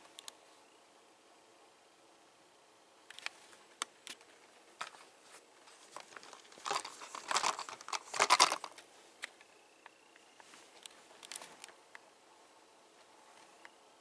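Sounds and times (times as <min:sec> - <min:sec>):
crinkling rustle: 0:03.1 - 0:09.4, 0:10.4 - 0:11.8
plastic toy parts clicking: 0:06.1 - 0:08.8.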